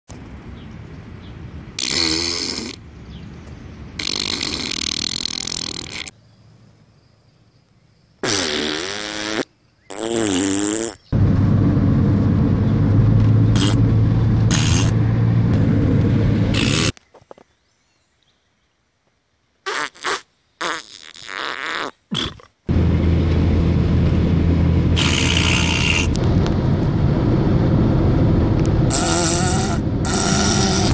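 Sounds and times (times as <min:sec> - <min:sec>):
fart sounds: 0:01.8 - 0:02.8, 0:04.0 - 0:06.1, 0:08.2 - 0:11.0, 0:13.6 - 0:13.8, 0:14.5 - 0:14.9, 0:16.5 - 0:17.0, 0:19.6 - 0:22.5, 0:25.0 - 0:26.2, 0:28.9 - 0:30.9.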